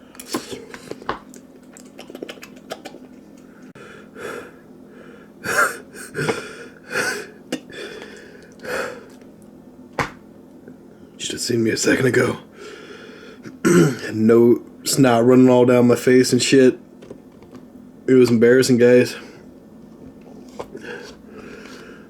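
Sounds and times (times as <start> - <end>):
man gasping and breathing hard: 3.8 - 9.1.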